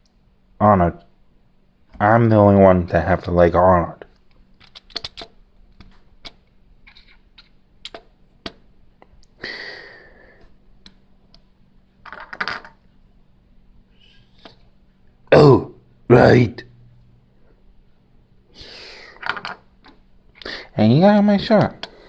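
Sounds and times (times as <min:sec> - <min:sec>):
plastic bricks clicking together: 0:04.6 - 0:06.4, 0:12.1 - 0:12.8.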